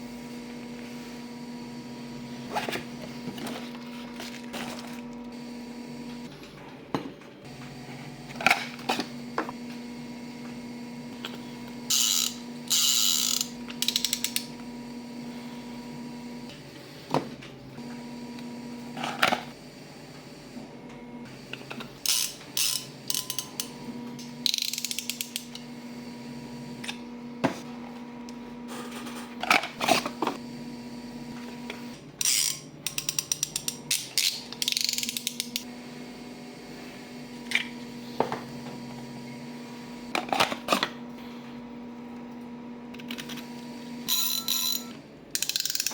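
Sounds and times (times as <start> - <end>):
fishing reel clicking and ratcheting: 32.2 - 35.6, 45.4 - 45.9.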